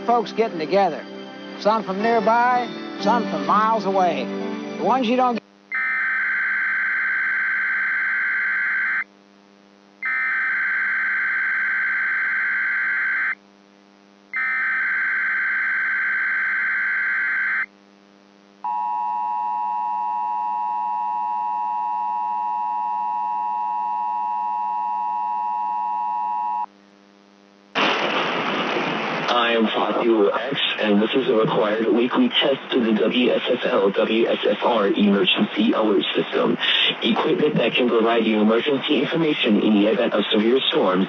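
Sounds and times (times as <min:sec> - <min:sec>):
faint steady hum: 0:03.1 - 0:27.8, 0:29.4 - 0:41.0
digital data screech: 0:05.7 - 0:09.0.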